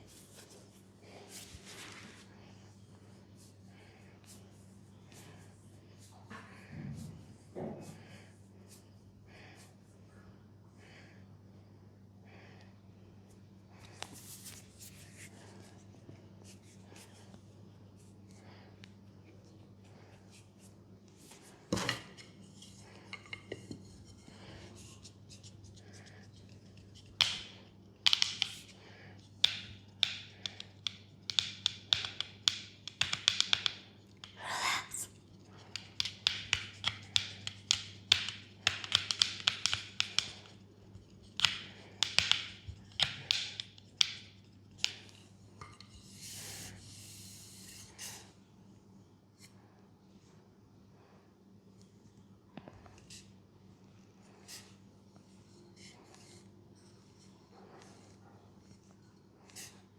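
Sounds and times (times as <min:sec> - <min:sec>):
low steady hum: 0:00.0 - 0:31.3.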